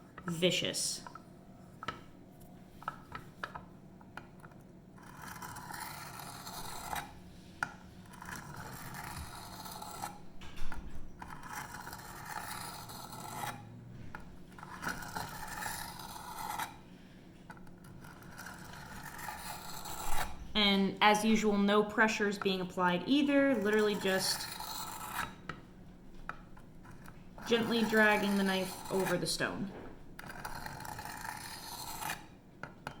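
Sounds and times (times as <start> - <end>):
knife scraping on whetstone: 5.0 - 7.2, 8.0 - 10.2, 11.2 - 13.6, 14.6 - 16.8, 17.5 - 20.5, 23.5 - 25.4, 26.8 - 29.5, 30.2 - 32.4.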